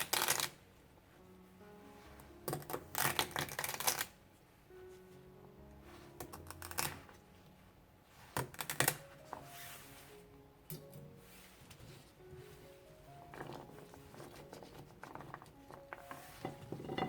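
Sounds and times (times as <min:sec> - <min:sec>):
celery leaves snapping and tearing: 0:00.0 - 0:00.6, 0:02.5 - 0:04.1, 0:06.2 - 0:07.2
soft background music: 0:00.0 - 0:17.0.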